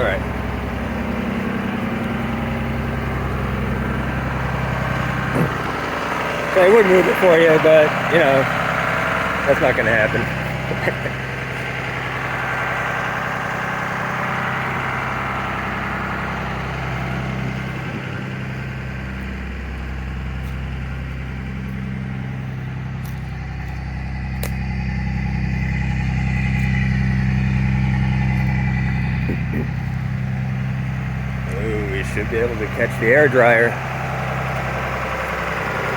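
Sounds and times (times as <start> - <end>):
bus engine idling: 0.0 - 35.9.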